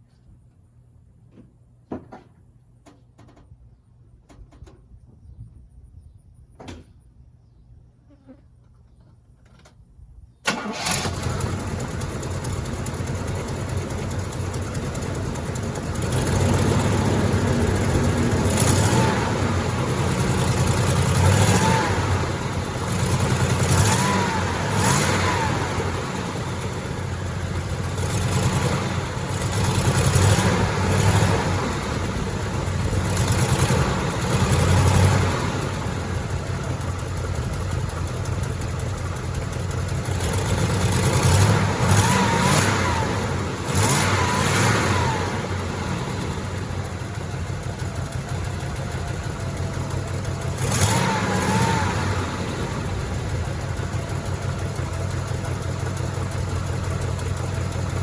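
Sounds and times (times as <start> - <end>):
car engine starting and revving: 10.5 - 58.0.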